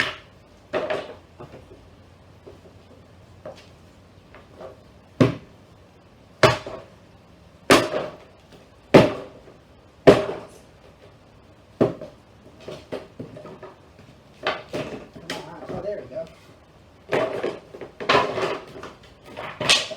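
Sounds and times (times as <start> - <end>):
heavy hammer blows on wood: 8.9 - 10.8.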